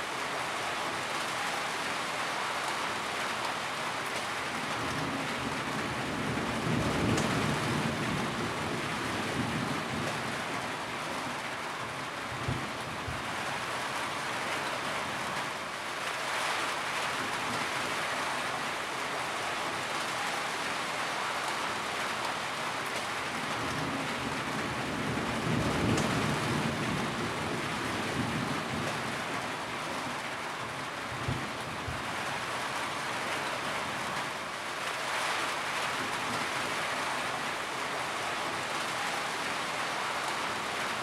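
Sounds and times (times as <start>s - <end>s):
steady rain: 0.0s - 41.0s
low rumble of thunder: 4.7s - 10.7s, 23.5s - 29.5s.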